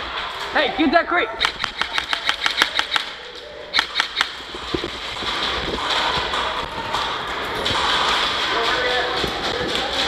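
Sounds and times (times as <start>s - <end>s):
airsoft guns firing: 1.4s - 3.2s, 3.8s - 7.1s.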